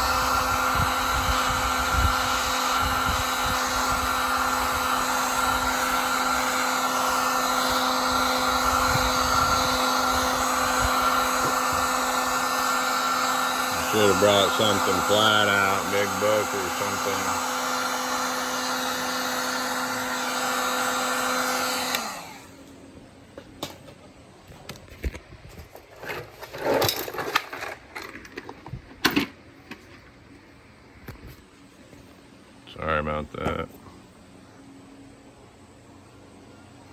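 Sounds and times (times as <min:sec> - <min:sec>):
hot-air blower running: 0:00.0 - 0:23.9
rustling scrape: 0:25.5 - 0:28.8.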